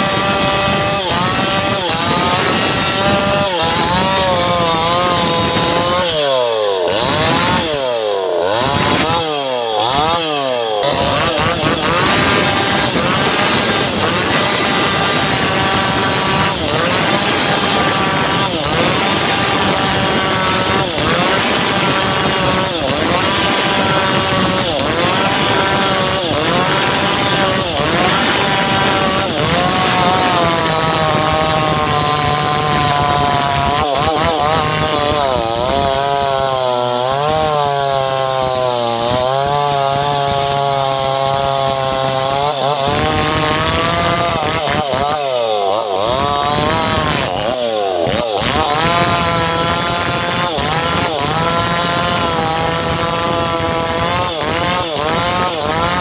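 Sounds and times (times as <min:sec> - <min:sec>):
engine-driven saw cutting wood: 0:00.0 - 0:56.0.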